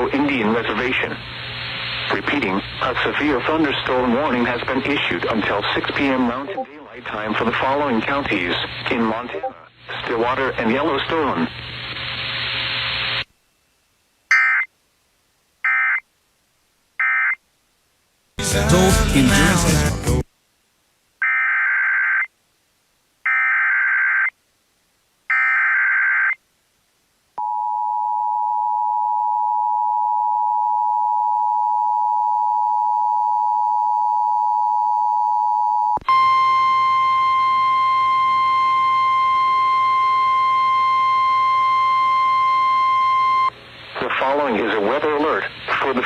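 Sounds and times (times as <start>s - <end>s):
radio hiss: 0.0s - 13.3s, 43.5s - 46.0s.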